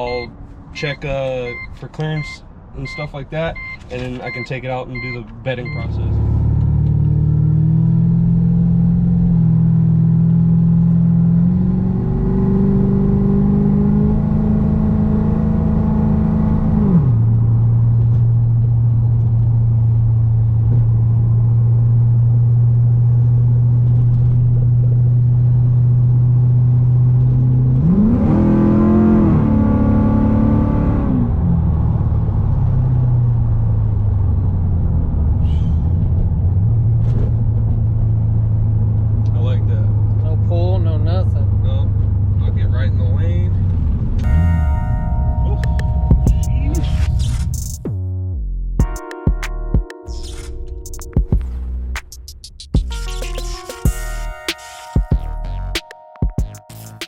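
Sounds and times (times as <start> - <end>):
car engine revving: 5.0 - 18.1, 27.2 - 48.6.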